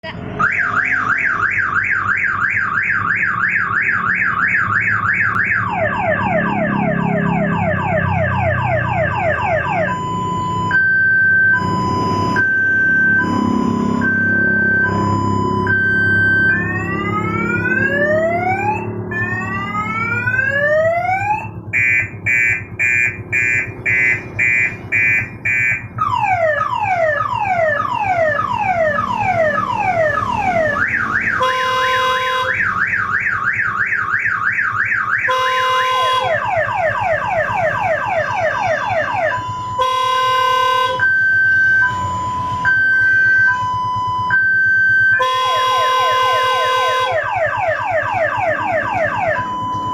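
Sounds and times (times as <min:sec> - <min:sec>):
electronic multi-tone horn: 0:09.7 - 0:16.8, 0:21.7 - 0:25.9, 0:29.3 - 0:32.8, 0:35.2 - 0:36.5, 0:38.0 - 0:43.8, 0:45.1 - 0:47.3.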